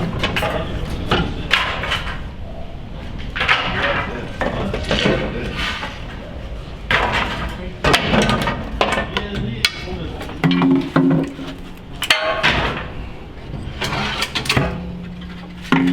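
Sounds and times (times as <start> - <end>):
indistinct voices: 0.0 - 15.9
sharp knocks and clatter: 3.2 - 6.3, 6.9 - 15.9.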